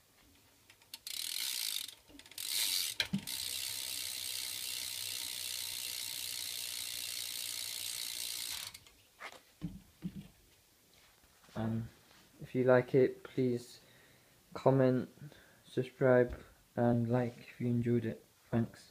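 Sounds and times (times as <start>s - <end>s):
bike hub ratchet clicking: 0.7s - 8.9s.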